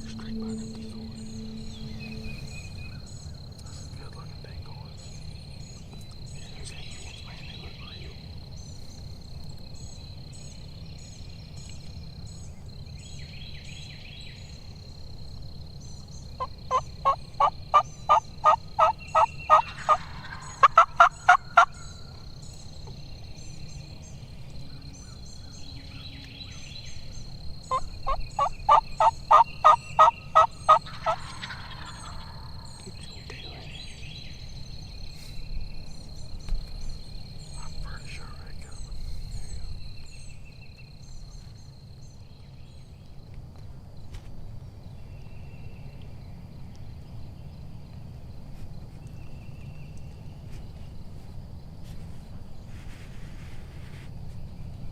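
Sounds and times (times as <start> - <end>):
faint steady high tone: 0.0 - 4.2
wild turkeys calling: 16.4 - 22.0, 27.7 - 33.0, 37.5 - 38.4.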